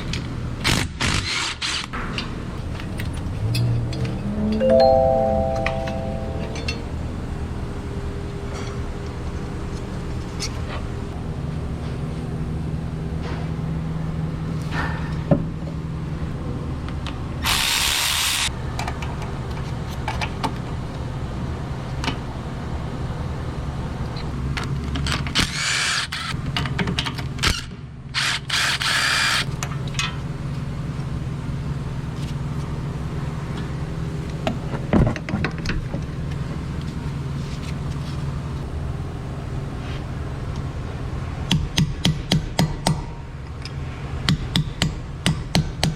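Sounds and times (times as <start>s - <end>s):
power tool running in bursts: 17.4s - 18.5s
low machine hum: 18.5s - 24.9s.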